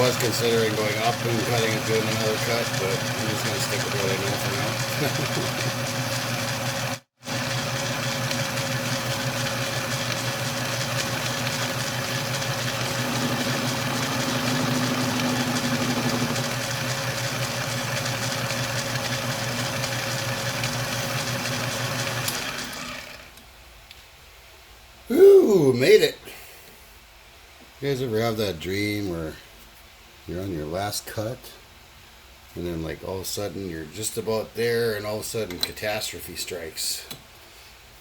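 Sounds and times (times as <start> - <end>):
metal lathe humming: 0.0 - 23.4.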